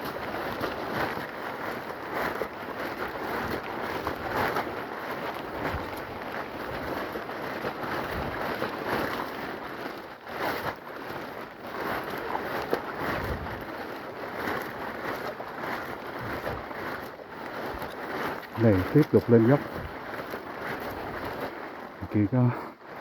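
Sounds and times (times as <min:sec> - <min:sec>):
wind buffeting microphone: 0:00.0 - 0:09.2, 0:12.0 - 0:22.6
steady rain hissing: 0:10.8 - 0:23.0.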